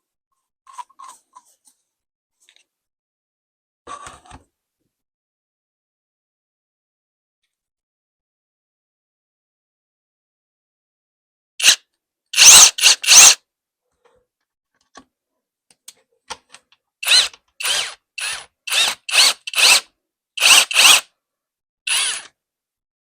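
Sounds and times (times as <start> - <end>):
cordless screwdriver motor whining: 12.4 - 13.4, 17.0 - 19.8, 20.4 - 21.0, 21.9 - 22.3.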